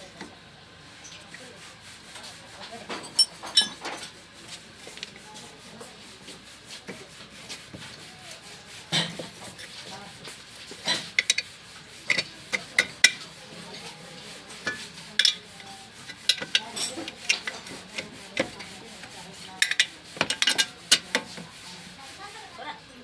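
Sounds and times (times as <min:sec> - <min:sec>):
metal tools clinking and scraping: 0:02.9 - 0:04.2, 0:10.8 - 0:21.4.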